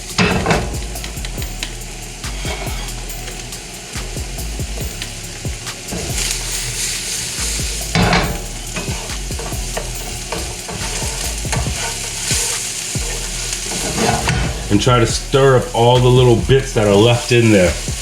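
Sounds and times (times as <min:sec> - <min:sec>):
onions sizzling in oil: 0:00.0 - 0:18.0
utensil scraping a pan: 0:04.8 - 0:18.0.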